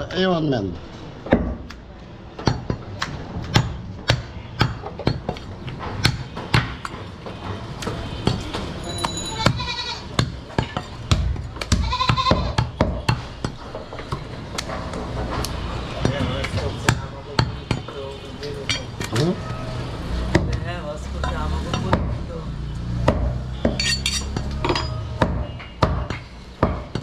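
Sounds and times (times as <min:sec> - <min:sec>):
cleaver chopping meat and bone: 0:02.4 - 0:07.0, 0:09.4 - 0:17.9, 0:21.7 - 0:22.2, 0:23.0 - 0:27.0
goat bleating: 0:09.3 - 0:10.1, 0:11.8 - 0:12.6.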